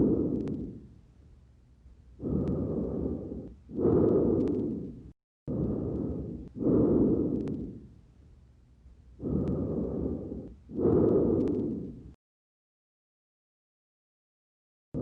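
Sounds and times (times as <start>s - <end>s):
breathing through stethoscope: 0.0s - 0.9s, 2.2s - 7.9s, 9.2s - 12.2s
faint clicks: 0.3s - 0.8s, 3.4s - 5.0s, 7.2s - 7.7s, 10.4s - 12.0s.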